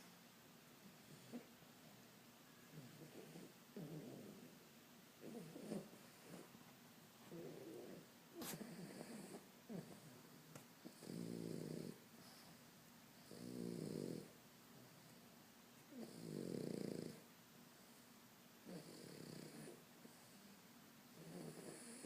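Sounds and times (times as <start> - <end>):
dog snoring: 2.7 - 4.6, 5.2 - 6.5, 7.3 - 12.5, 13.2 - 14.4, 15.9 - 17.3, 18.6 - 20.4, 21.1 - 22.0.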